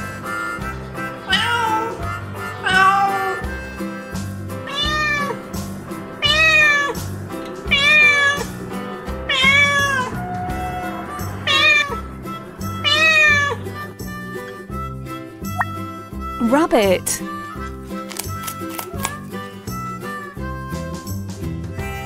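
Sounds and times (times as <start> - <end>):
background music: 0.0 - 22.0
cat meowing: 1.3 - 3.4, 4.7 - 5.4, 6.2 - 7.0, 7.7 - 8.5, 9.3 - 12.0, 12.8 - 13.6.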